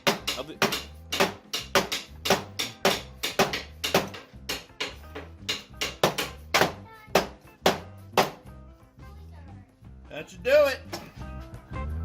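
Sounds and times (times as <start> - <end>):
drum beat: 0.0 - 8.5
bass line: 0.8 - 12.0.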